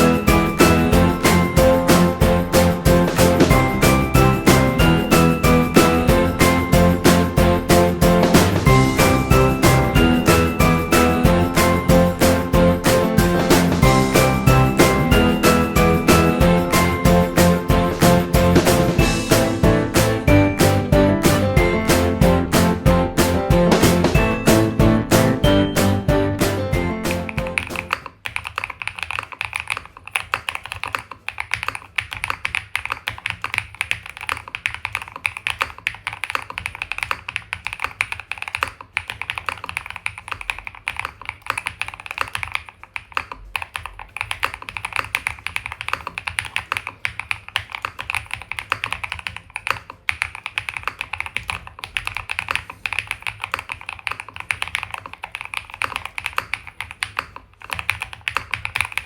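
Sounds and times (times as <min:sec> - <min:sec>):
fast typing on mechanical keyboard: 0:27.1 - 0:59.0.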